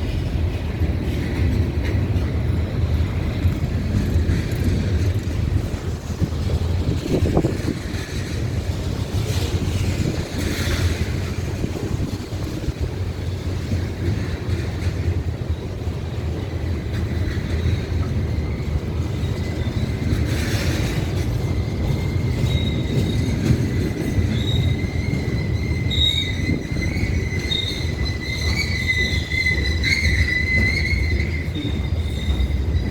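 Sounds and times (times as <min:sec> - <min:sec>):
freight train rumbling: 0:00.0 - 0:32.9
high wheel squeal: 0:15.5 - 0:32.9.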